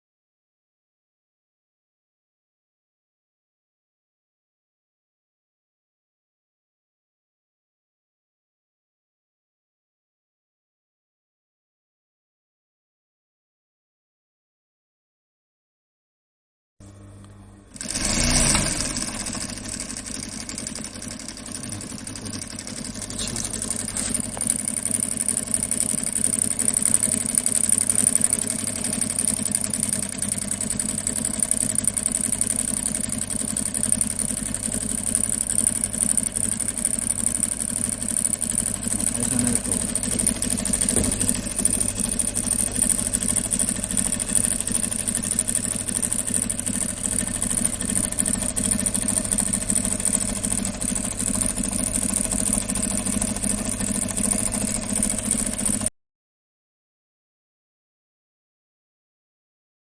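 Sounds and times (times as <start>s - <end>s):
industrial sewing machine running: 17.7s - 55.9s.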